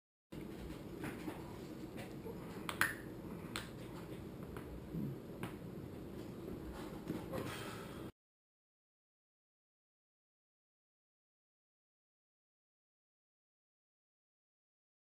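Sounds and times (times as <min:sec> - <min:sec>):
room noise: 0:00.4 - 0:08.1.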